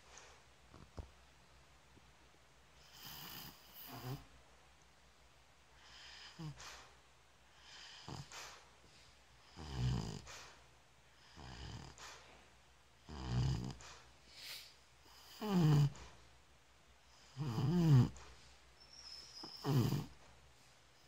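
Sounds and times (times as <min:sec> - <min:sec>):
soft breathing: 0:05.7 - 0:09.4, 0:10.2 - 0:12.6, 0:13.7 - 0:16.3
person snoring: 0:13.1 - 0:13.8, 0:15.2 - 0:16.0, 0:17.3 - 0:18.2, 0:19.5 - 0:20.1.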